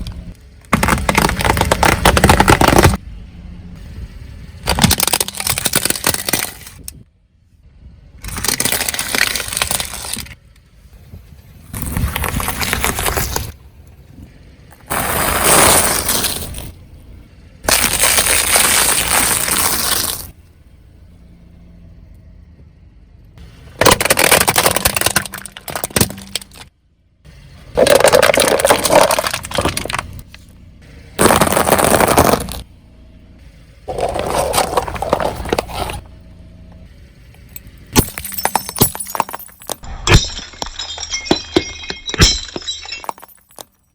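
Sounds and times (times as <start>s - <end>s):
tyres crushing objects: 0.0s - 3.0s, 4.6s - 7.0s, 8.2s - 10.4s, 11.7s - 13.6s, 14.7s - 16.7s, 17.6s - 20.3s, 23.7s - 26.7s, 27.7s - 30.4s, 31.2s - 32.7s, 33.9s - 36.1s, 37.9s - 43.9s.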